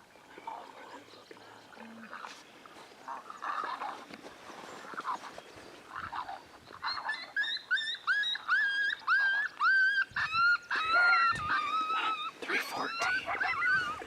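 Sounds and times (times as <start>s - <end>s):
coyote yelps from a game caller: 6.0s - 14.0s.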